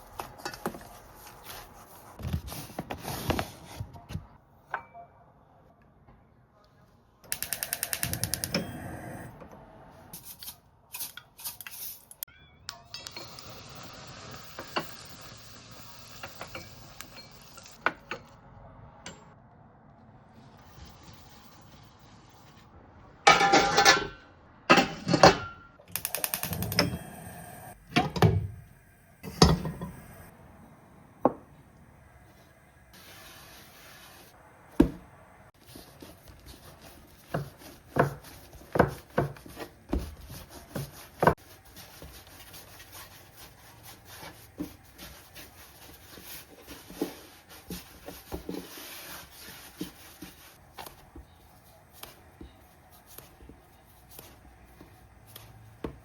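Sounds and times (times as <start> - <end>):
utensils and dishware clattering: 23.3 - 24.1.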